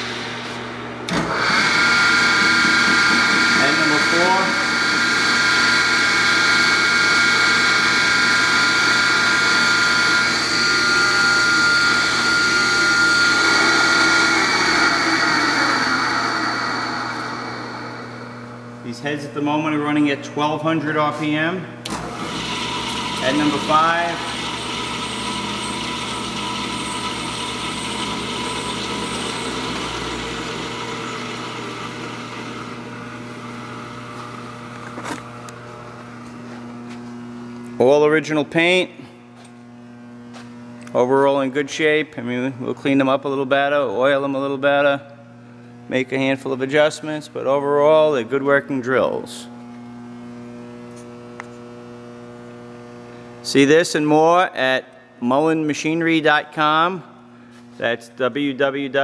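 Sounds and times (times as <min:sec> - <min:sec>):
drill press motor running: 0:00.0 - 0:18.8, 0:21.8 - 0:36.9.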